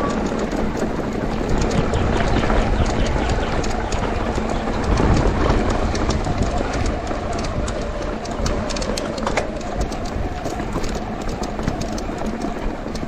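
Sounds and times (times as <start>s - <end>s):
bike rattling over rocks: 0.0s - 13.0s.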